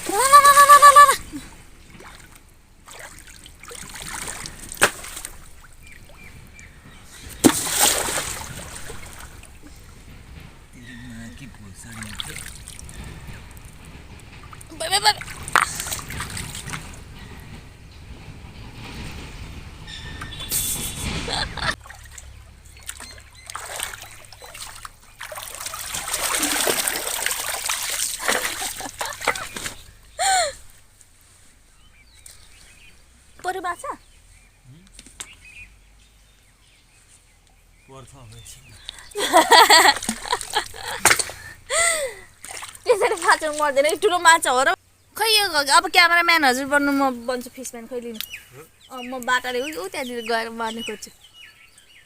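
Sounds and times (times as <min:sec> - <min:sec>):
splashes in shallow pond water: 0:01.8 - 0:06.3, 0:07.3 - 0:09.6, 0:11.8 - 0:13.0, 0:15.2 - 0:17.0, 0:21.7 - 0:30.0, 0:39.0 - 0:41.7, 0:42.3 - 0:43.8.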